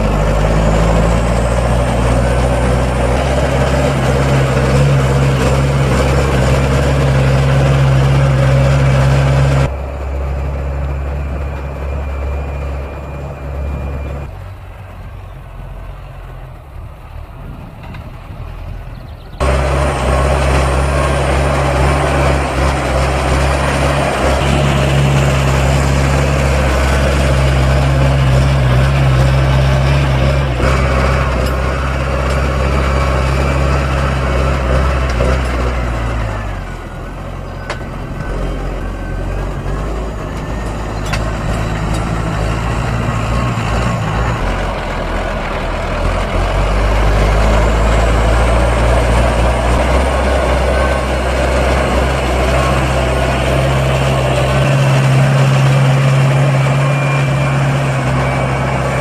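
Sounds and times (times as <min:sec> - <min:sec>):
tractor diesel engine running: 0:00.0 - 0:59.0.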